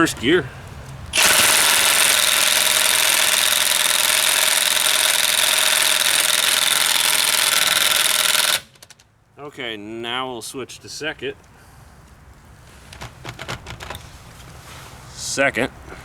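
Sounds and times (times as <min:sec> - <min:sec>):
impact wrench hammering with whine: 0:01.1 - 0:09.0.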